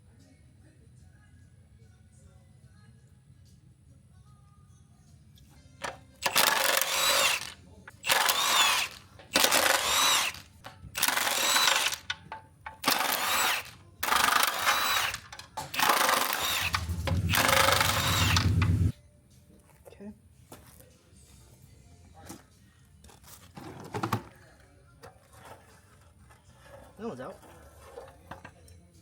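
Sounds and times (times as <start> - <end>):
impact wrench whining: 5.8 - 18.9.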